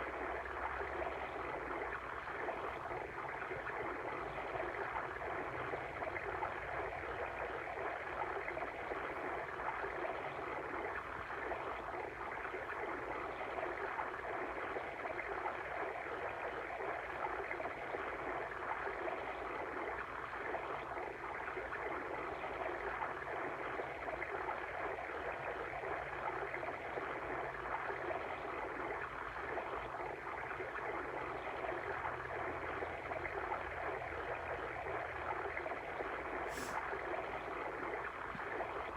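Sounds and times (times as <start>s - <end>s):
babbling water stream: 36.4s - 38.9s.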